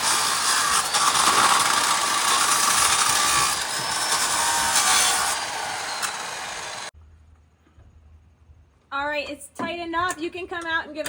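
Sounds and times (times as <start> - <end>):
tool grinding on bolts: 0.0 - 6.9.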